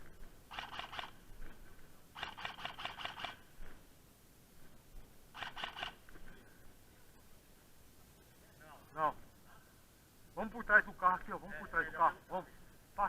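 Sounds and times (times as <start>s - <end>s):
airsoft gun rapid bursts: 0.5s - 1.2s, 2.2s - 3.4s, 5.4s - 6.0s.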